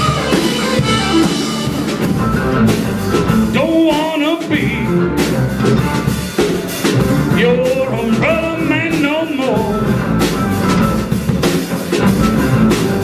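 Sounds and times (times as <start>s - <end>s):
electric guitar: 0.0s - 3.6s
drums: 0.0s - 13.0s
person singing: 3.5s - 5.0s, 7.3s - 9.9s.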